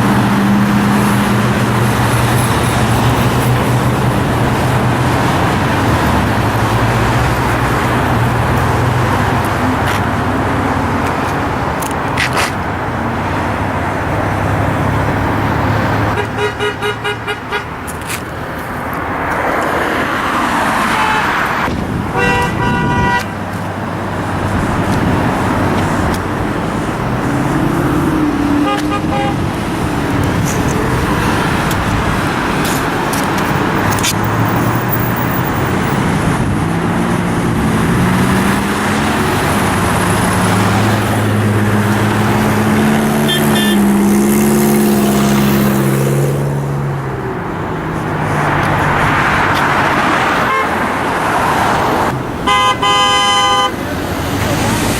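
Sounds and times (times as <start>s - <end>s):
road traffic: 0.0s - 54.9s
car horns honking: 12.3s - 18.1s, 20.6s - 44.8s, 47.6s - 54.0s
engine revving up: 24.2s - 47.1s.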